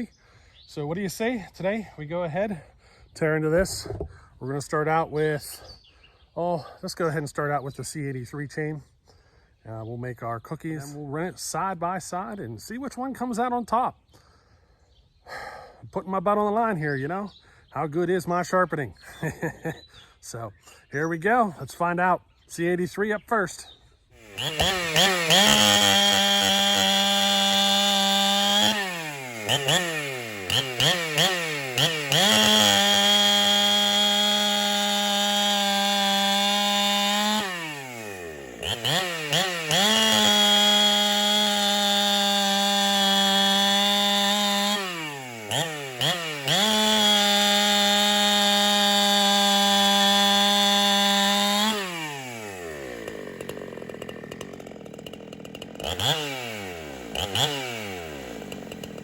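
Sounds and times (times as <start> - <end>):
chainsaw cutting log: 3.3 - 5.0, 24.2 - 59.0.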